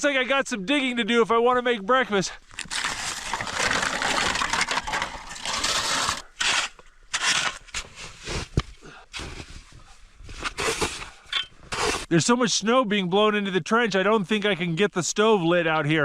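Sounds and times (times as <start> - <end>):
shovel scraping snow: 2.6 - 12.1.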